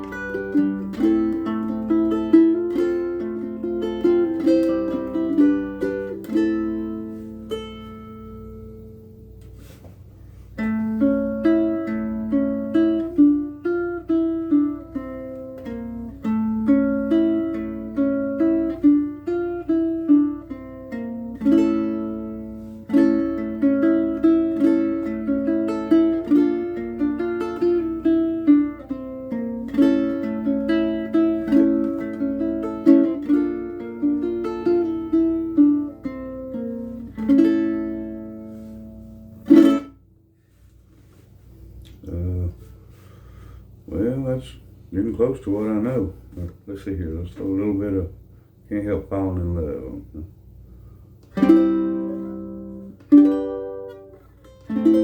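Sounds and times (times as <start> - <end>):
ukulele chords and plucked melody: 0.0 - 9.8, 10.6 - 40.1, 51.2 - 55.0.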